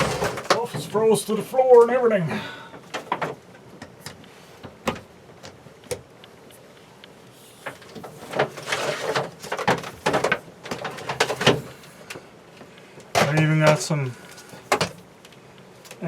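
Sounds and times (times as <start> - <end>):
scraping and rustling: 7.4 - 12.0
handling clicks and knocks: 7.7 - 15.1.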